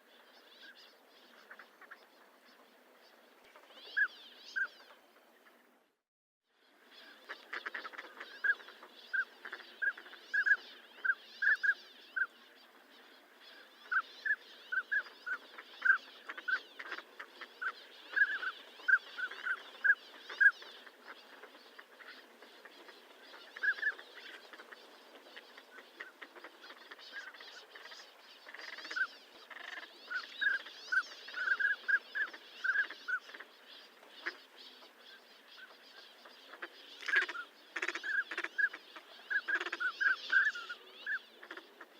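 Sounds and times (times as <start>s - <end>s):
steady background hiss: 6.6s - 41.9s
ducks giving whistled calls: 36.6s - 41.6s.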